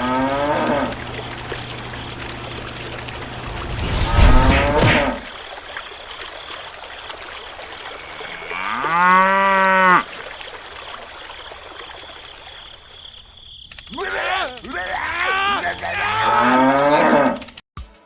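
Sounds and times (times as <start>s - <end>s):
cow mooing: 0.0s - 1.0s, 8.1s - 10.1s, 14.9s - 17.5s.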